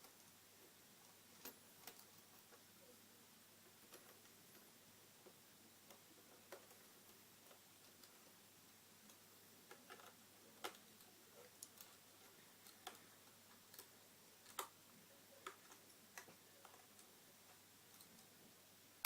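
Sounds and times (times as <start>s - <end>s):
small clicks and taps: 9.0s - 18.4s.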